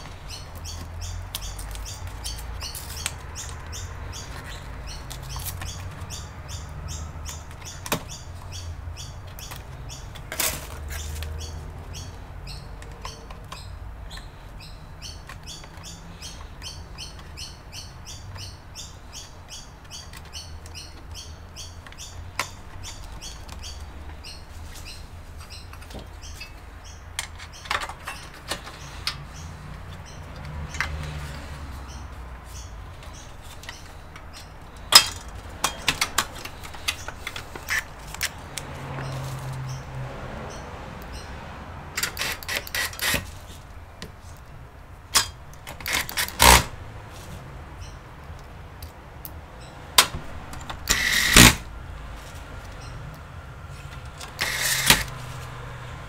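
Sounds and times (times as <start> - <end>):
small bird chirping: 0.0 - 10.2, 10.9 - 35.0
clicks and knocks of hard parts: 7.2 - 8.2, 27.1 - 31.4, 33.0 - 39.1, 42.0 - 43.3, 45.1 - 46.8, 48.3 - 51.7, 53.9 - 55.2.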